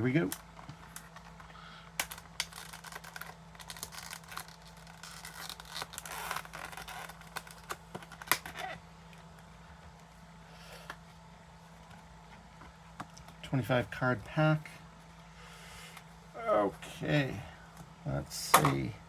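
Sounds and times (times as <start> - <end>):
sharp paper snaps: 2.0 - 8.6
wax paper tearing and crinkling: 2.0 - 8.8.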